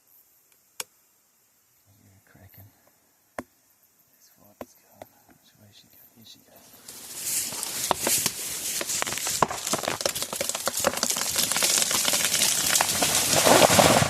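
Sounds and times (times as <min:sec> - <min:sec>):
tree crashing down: 0:06.7 - 0:14.0
wood cracking and snapping: 0:06.8 - 0:14.0.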